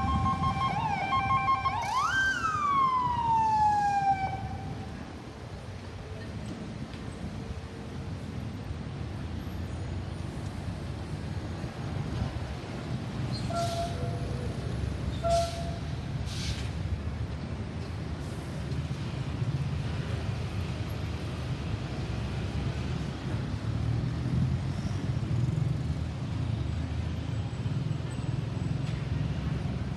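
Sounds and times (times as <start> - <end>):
traffic rumble of engines and tyres: 0.0 - 29.9
brief hisses: 15.4 - 16.8.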